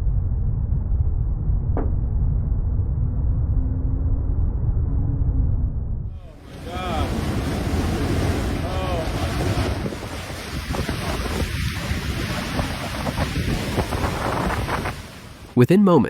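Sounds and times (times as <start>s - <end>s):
brief low rumble: 0.0s - 6.3s
storm wind on microphone: 0.0s - 15.6s.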